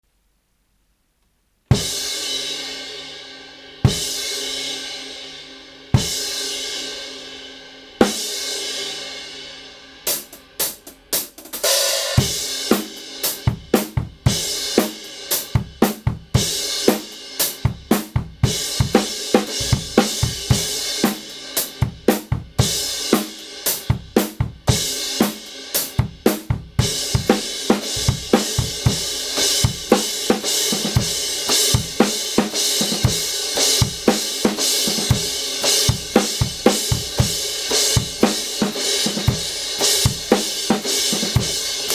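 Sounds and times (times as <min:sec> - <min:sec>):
snare drum: 0:10.2 - 0:41.9
bass drum: 0:13.5 - 0:14.6, 0:15.6 - 0:16.6, 0:17.6 - 0:21.2, 0:21.8 - 0:23.0, 0:23.9 - 0:25.1, 0:26.0 - 0:41.9.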